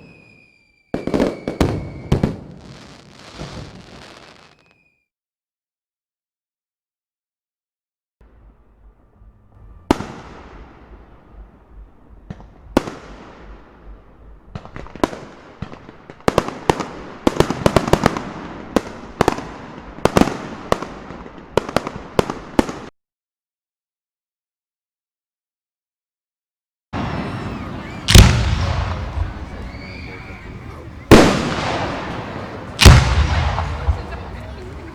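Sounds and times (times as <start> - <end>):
fireworks banging: 0.0 - 4.7, 8.2 - 22.9, 27.0 - 34.9.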